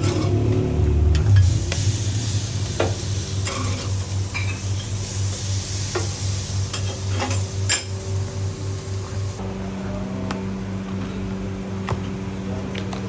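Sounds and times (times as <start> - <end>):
low pulsing hum: 0.0 - 9.4
food sizzling in a pan: 1.3 - 9.4.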